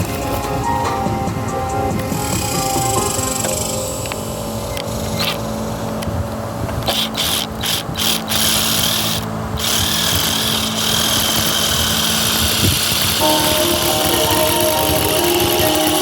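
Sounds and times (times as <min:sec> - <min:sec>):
power tool cutting wood: 0:06.9 - 0:16.0.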